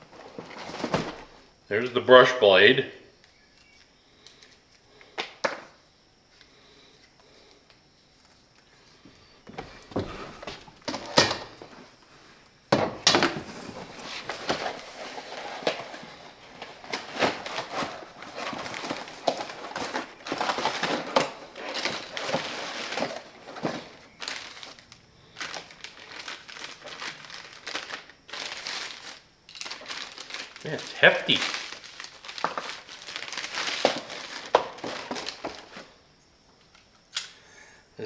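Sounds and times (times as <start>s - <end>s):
packaging rustling: 0.0s - 1.6s, 13.0s - 36.0s
metal clinks and knocks: 29.5s - 30.0s, 37.1s - 37.4s.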